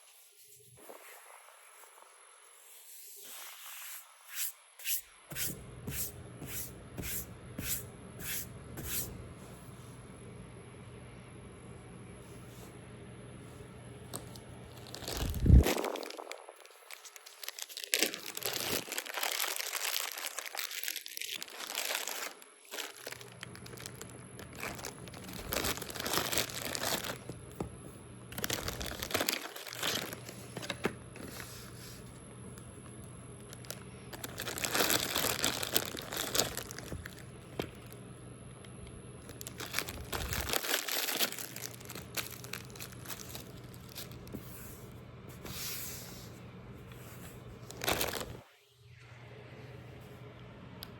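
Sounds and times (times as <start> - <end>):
low steady hum: 3.9 - 50.9
plastic packaging crinkling: 14.1 - 27.6, 28.3 - 31.8, 32.5 - 38.0, 39.2 - 44.4, 47.5 - 48.5.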